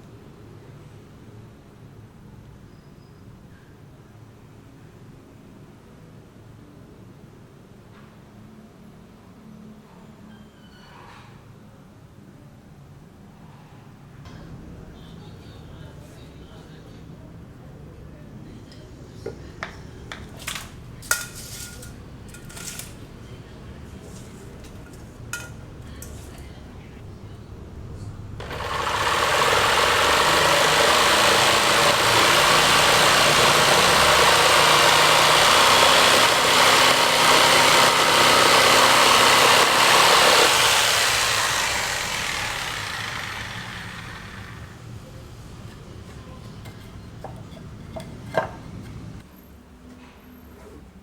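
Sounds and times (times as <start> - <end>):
loud machine noise: 28.4 - 45.1.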